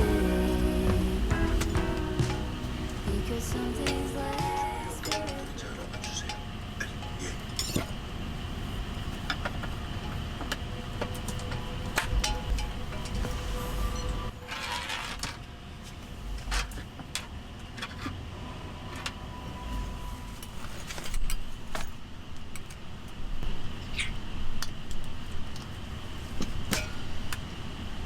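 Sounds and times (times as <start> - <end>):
steady low rumble: 0.0 - 6.8.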